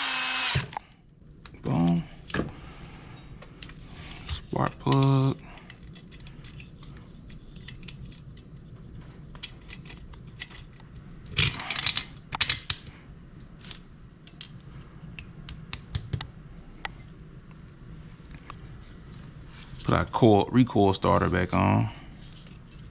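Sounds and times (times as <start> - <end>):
metal tools clicking and clinking: 11.4 - 12.7.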